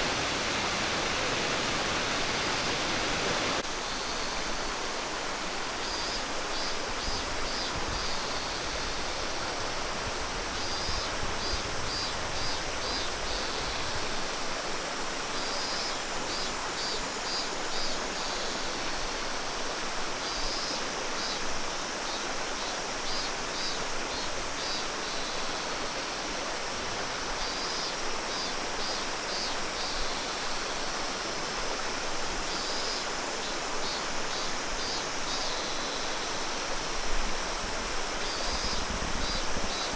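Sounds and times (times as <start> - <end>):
stream and waterfall rushing: 0.0 - 39.9.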